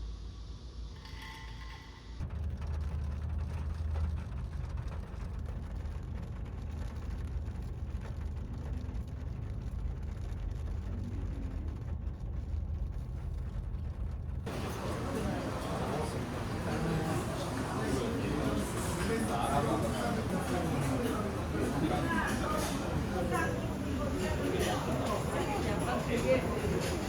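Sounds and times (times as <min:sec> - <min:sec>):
car engine drone: 0:02.2 - 0:19.5
road rumble: 0:02.3 - 0:27.0.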